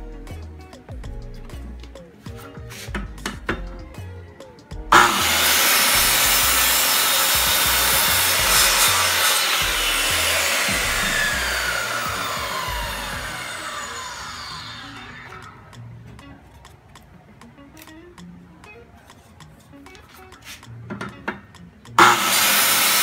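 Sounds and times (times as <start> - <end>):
circular saw cutting wood: 4.9 - 15.7, 22.0 - 23.0.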